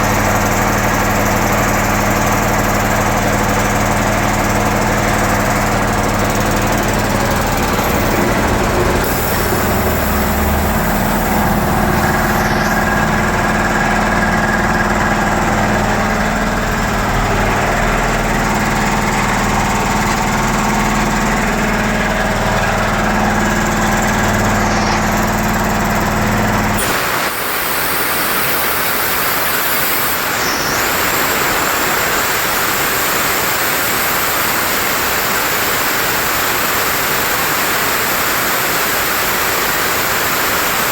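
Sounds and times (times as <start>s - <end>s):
air compressor humming: 0.0s - 40.8s
compressed air hissing: 7.2s - 13.9s, 26.8s - 34.2s.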